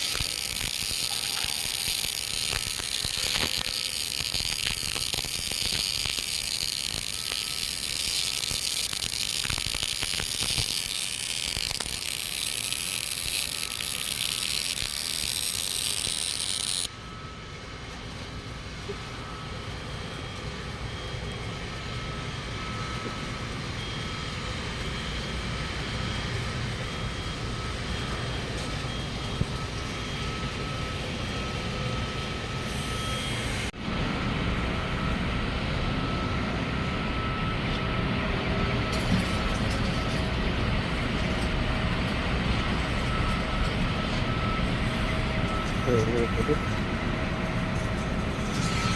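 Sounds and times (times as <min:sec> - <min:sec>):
welding arc crackling and hissing: 0:00.0 - 0:16.9, 0:38.9 - 0:48.9
low machine hum: 0:00.0 - 0:48.9.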